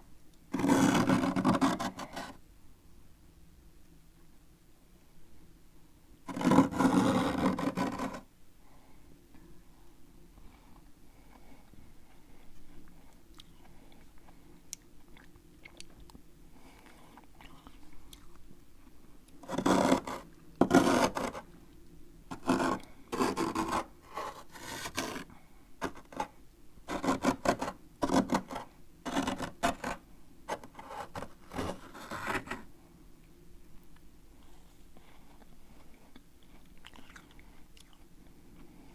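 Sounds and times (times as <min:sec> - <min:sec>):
spoon scraping frost: 0:06.3 - 0:08.2.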